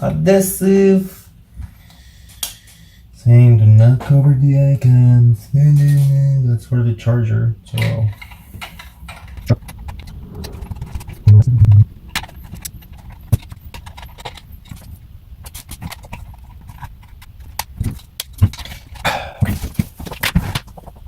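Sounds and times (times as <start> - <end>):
low thump: 9.5 - 12.4.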